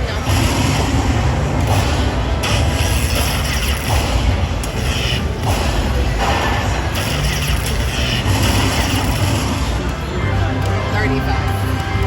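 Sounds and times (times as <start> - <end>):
slot machine music and effects: 6.2 - 12.0.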